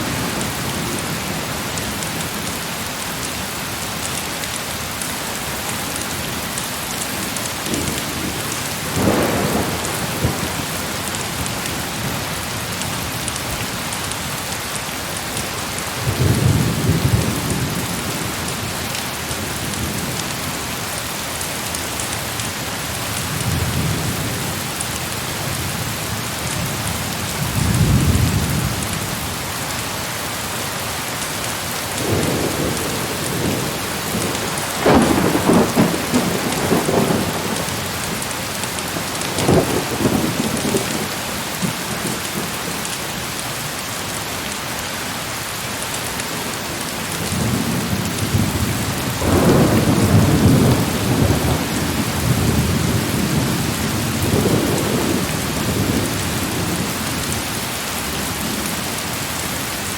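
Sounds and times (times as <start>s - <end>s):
heavy rain falling: 0.0s - 59.9s
thunder rumbling: 7.6s - 12.2s, 32.0s - 42.8s, 47.2s - 57.4s.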